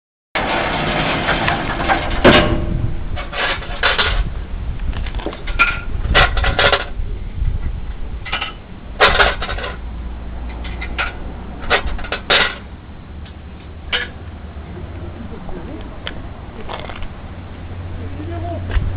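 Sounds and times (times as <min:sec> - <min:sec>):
metallic clanks and rattles: 0:00.4 - 0:07.0, 0:07.6 - 0:14.3, 0:16.0 - 0:17.2.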